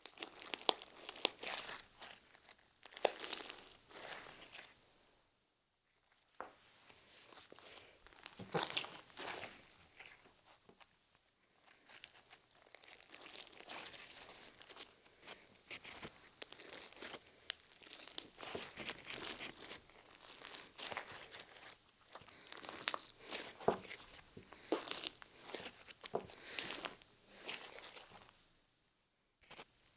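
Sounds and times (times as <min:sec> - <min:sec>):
slime crackling and popping: 0:00.0 - 0:04.7, 0:07.6 - 0:10.9, 0:11.5 - 0:28.3.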